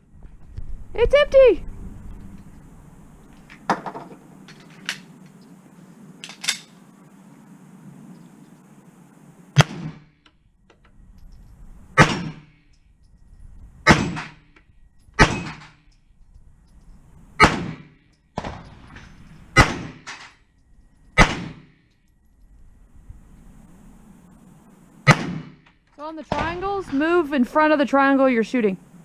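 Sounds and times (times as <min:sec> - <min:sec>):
single gunshots: 0:09.6 - 0:10.1, 0:12.0 - 0:12.5, 0:13.8 - 0:14.4, 0:15.2 - 0:15.7, 0:17.4 - 0:18.7, 0:19.6 - 0:20.1, 0:21.2 - 0:21.8, 0:25.0 - 0:25.6.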